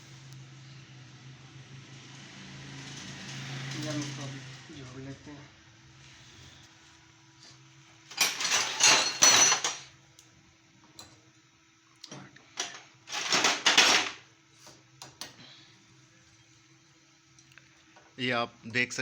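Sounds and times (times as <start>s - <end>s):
metal tools clinking and clattering: 8.1s - 9.9s, 12.6s - 14.2s.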